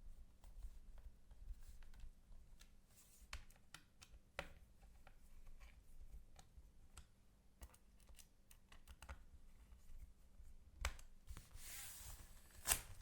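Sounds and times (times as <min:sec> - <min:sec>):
laptop clicks and taps: 0:06.3 - 0:09.3.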